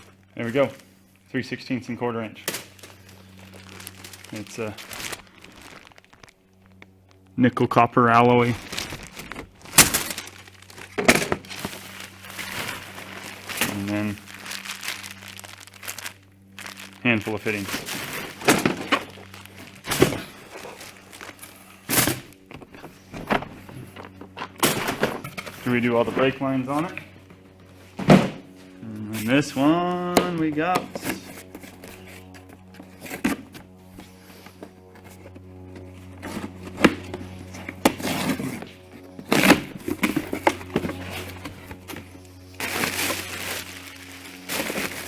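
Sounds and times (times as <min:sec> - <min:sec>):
faint steady hum: 0:00.0 - 0:45.0
cardboard box being opened: 0:02.5 - 0:06.3, 0:08.4 - 0:26.9, 0:30.7 - 0:35.4, 0:36.1 - 0:45.0
cardboard rustling and tearing: 0:02.5 - 0:06.4, 0:08.3 - 0:27.2, 0:27.8 - 0:45.0.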